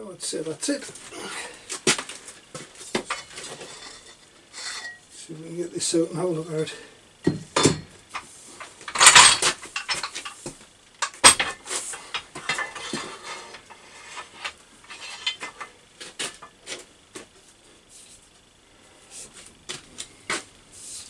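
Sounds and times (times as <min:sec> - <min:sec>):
metal tube clanking and rattling: 0:07.3 - 0:10.4, 0:11.0 - 0:15.7.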